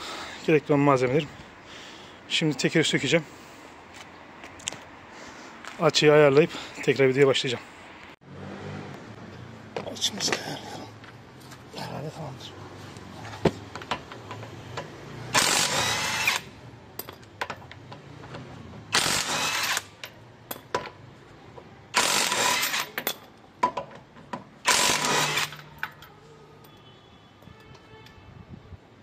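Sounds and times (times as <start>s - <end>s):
power tool undoing bolts: 14.2s - 16.5s, 18.8s - 20.2s, 21.9s - 23.2s, 24.6s - 26.0s.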